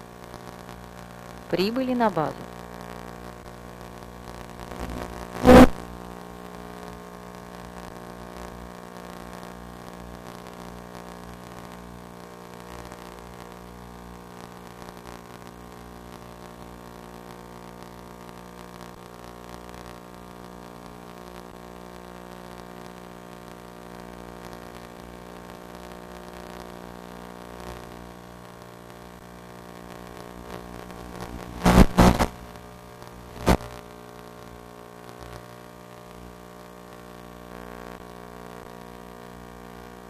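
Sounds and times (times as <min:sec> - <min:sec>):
steady electrical hum: 0:00.0 - 0:40.0
loud electrical crackles: 0:00.2 - 0:09.4, 0:28.8 - 0:35.6.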